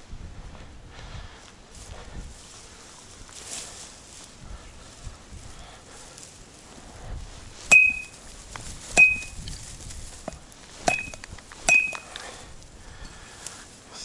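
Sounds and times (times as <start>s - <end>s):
metal club strikes ringing: 7.7s - 8.2s, 9.0s - 9.4s, 10.8s - 12.1s.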